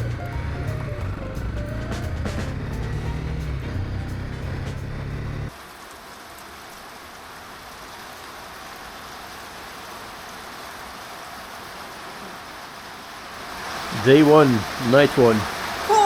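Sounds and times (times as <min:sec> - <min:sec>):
music: 0:00.0 - 0:05.5
steady falling rain: 0:00.0 - 0:16.0.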